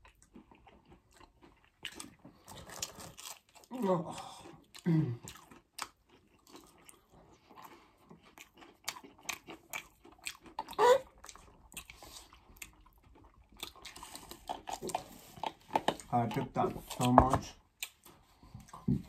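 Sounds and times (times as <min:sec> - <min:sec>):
chewing and crunching food: 0:00.0 - 0:19.0.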